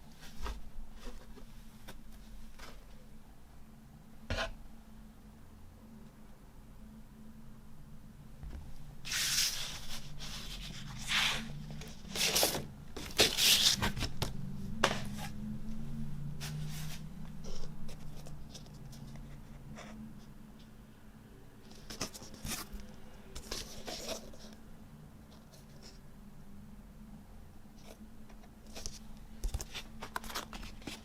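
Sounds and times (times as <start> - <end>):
paper or plastic rustling: 9.1 - 14.2, 28.7 - 31.0.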